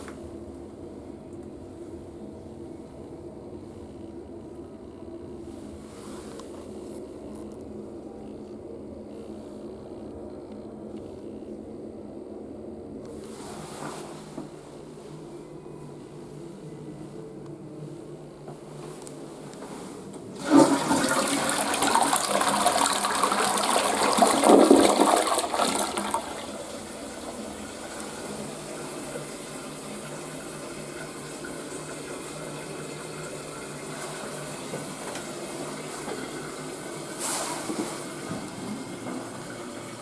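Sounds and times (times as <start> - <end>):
toilet flushing water rush: 20.3 - 40.0
water refilling hiss: 35.7 - 40.0.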